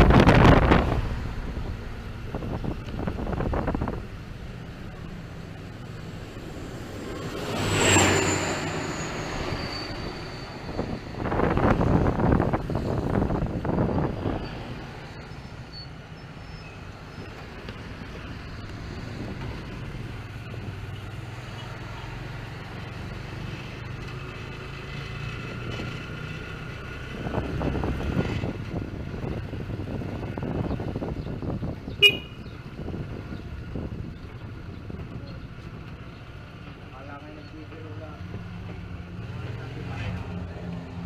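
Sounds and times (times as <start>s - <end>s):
road traffic: 0.0s - 41.0s
car horn toot: 32.0s - 32.4s.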